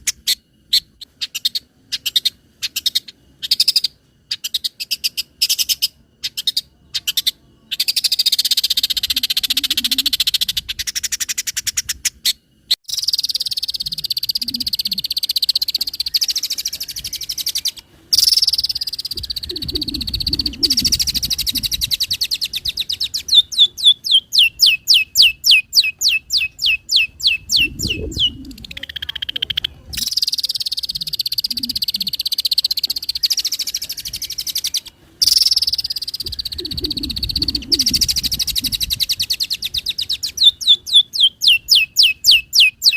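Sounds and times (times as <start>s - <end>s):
bird singing mimicked calls: 0.0s - 42.9s.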